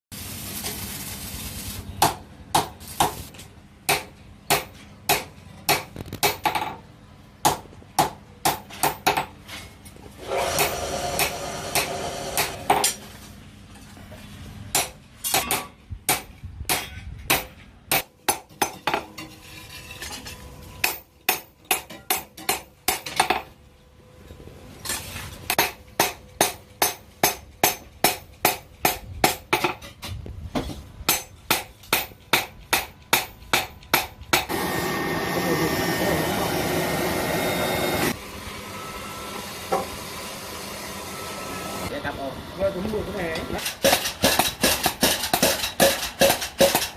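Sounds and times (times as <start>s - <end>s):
continuous harsh noise: 0.1s - 46.9s
hammer striking steel on anvil: 3.9s - 6.8s, 7.4s - 9.4s, 10.6s - 13.0s, 14.7s - 19.3s, 20.8s - 23.5s, 25.5s - 29.8s, 31.1s - 34.6s, 43.6s - 46.9s.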